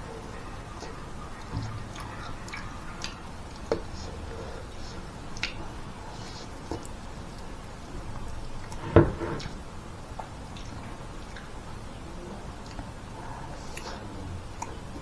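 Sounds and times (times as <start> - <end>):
chewing noodles: 0.2 - 8.8
wet mouth clicks and smacks: 1.5 - 4.0, 5.3 - 5.7.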